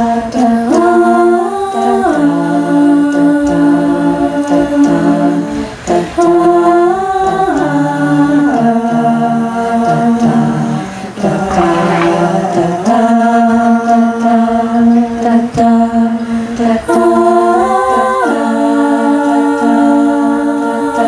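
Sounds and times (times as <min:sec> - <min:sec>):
vocal group humming chords: 0:00.1 - 0:15.3.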